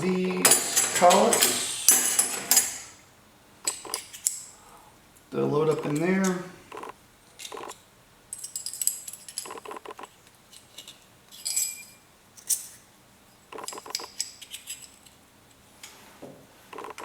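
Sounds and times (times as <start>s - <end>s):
steel collets clinking and rattling: 8.3s - 9.8s, 10.5s - 12.9s, 13.6s - 15.2s.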